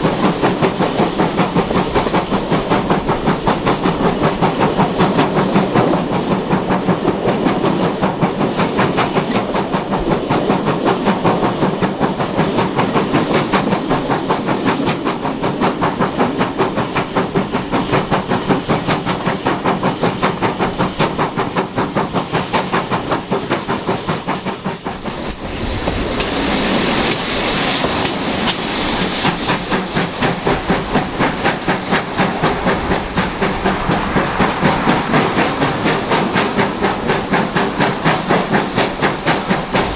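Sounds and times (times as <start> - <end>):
steam locomotive exhaust beating: 0.0 - 39.9
loud steam hiss: 17.1 - 39.9.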